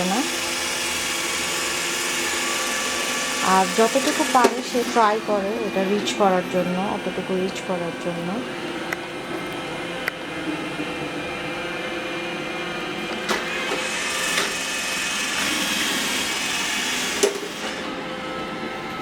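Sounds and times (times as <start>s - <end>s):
robot vacuum running: 0.0s - 19.0s.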